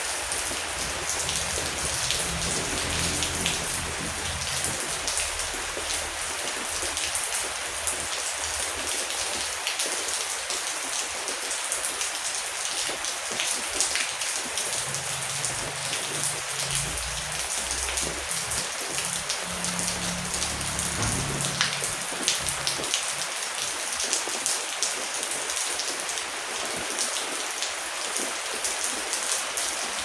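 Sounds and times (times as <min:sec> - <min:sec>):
heavy rain pattering: 0:00.0 - 0:30.0
low rumble: 0:00.4 - 0:06.4, 0:14.7 - 0:23.4.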